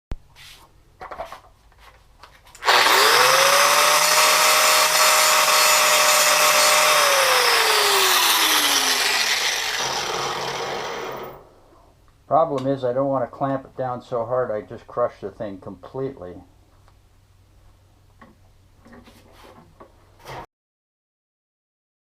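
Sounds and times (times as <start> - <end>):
angle grinder grinding steel: 2.6 - 11.6.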